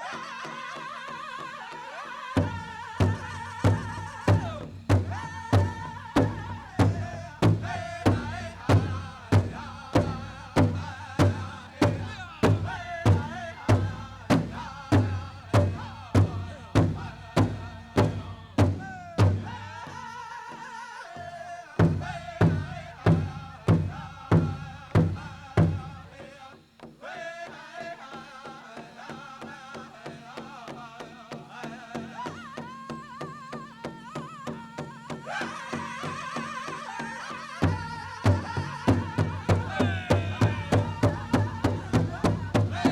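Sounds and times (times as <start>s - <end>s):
group singing: 0.0s - 42.9s
big drum beats: 2.4s - 20.0s, 21.8s - 26.2s, 37.6s - 42.9s.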